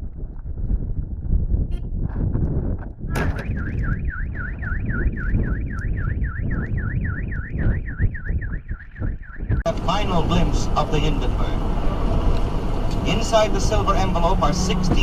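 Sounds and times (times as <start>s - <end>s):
heavy low rumble: 0.0s - 15.0s
sudden bang: 3.1s - 4.0s
car alarm warbling: 3.1s - 9.7s.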